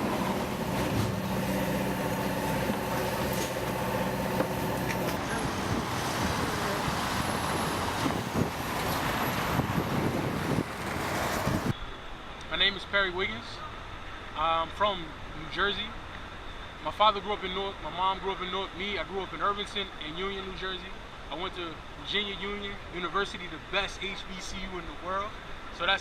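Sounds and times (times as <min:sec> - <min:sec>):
large vehicle engine humming: 0:00.0 - 0:11.8
street traffic: 0:00.0 - 0:12.6.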